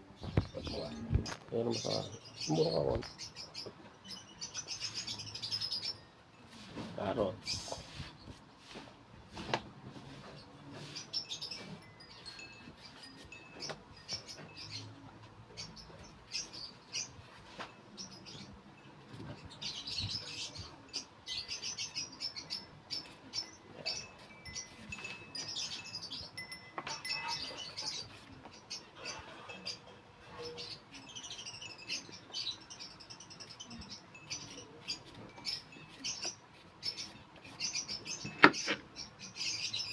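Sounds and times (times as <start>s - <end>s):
lovebirds chirping: 0.0s - 39.9s.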